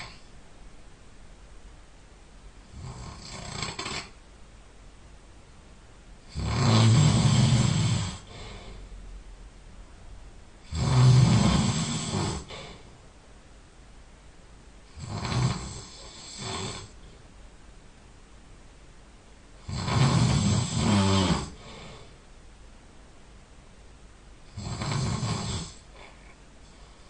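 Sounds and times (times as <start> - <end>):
person snoring loudly: 0.0 - 0.2, 2.7 - 4.2, 6.3 - 8.8, 10.6 - 12.9, 14.9 - 17.0, 19.6 - 22.1, 24.5 - 26.1.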